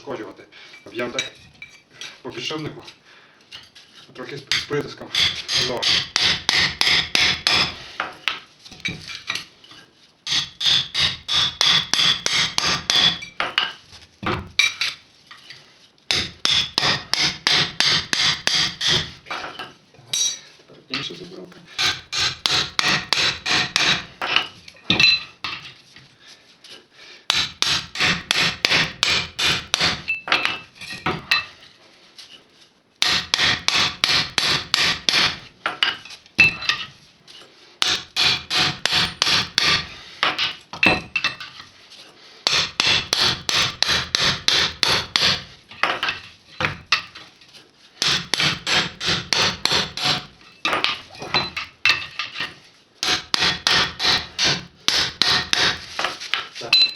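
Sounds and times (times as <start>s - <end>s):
hammer striking chisel on metal: 4.5s - 9.4s, 10.3s - 15.0s, 16.1s - 20.4s, 21.8s - 25.7s, 27.3s - 31.5s, 33.0s - 36.9s, 37.8s - 41.6s, 42.5s - 47.2s, 48.0s - 56.9s.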